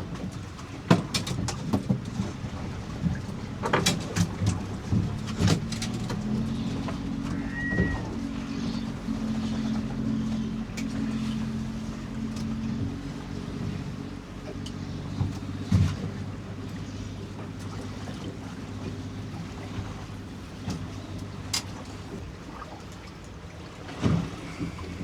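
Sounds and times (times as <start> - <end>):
boat engine running: 0.0 - 25.0.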